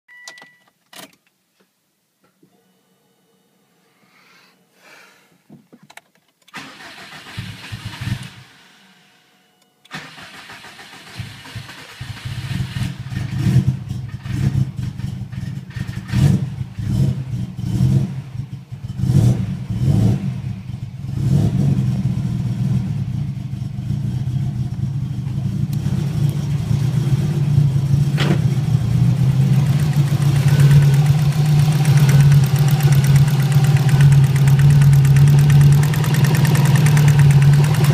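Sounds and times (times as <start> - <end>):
car engine revving and idling: 11.2 - 37.9
engine tapping noise: 29.4 - 37.9.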